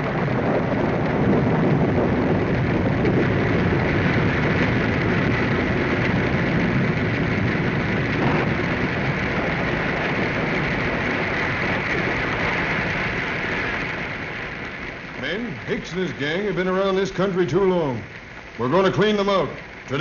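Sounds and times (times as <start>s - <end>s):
heavy rain: 0.0s - 20.0s
low rumble: 0.0s - 20.0s
wind: 0.0s - 20.0s.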